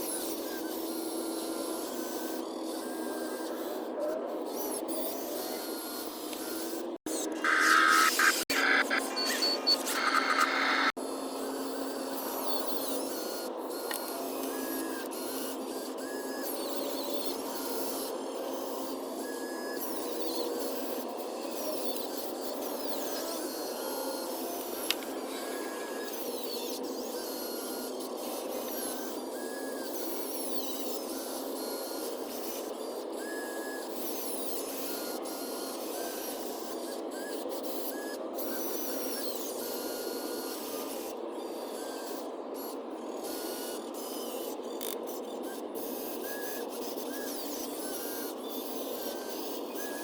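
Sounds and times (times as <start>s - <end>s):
small electric motors whirring: 0.0s - 50.0s
short high chirps and blips: 7.1s - 10.9s.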